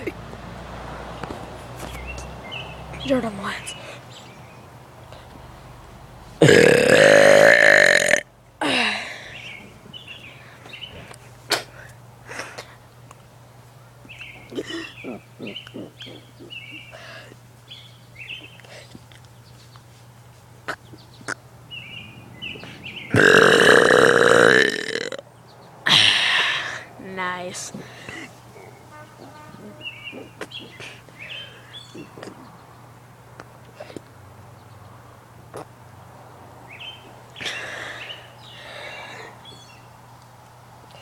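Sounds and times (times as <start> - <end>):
man burping: 6.4 - 9.0, 14.5 - 16.6, 23.1 - 25.2.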